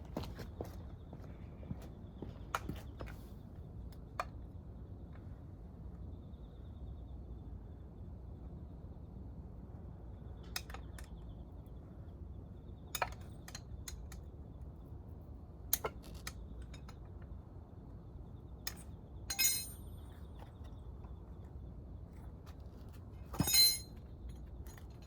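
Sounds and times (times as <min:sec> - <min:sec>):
steady low hum: 0:00.0 - 0:25.0
metal tools clinking: 0:19.3 - 0:19.9, 0:23.3 - 0:25.0.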